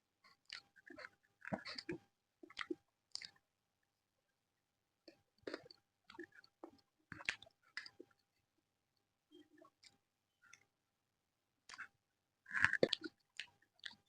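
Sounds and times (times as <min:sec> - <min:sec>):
person chewing and smacking: 0:00.3 - 0:03.4, 0:05.1 - 0:08.2, 0:11.6 - 0:11.9, 0:12.5 - 0:14.0.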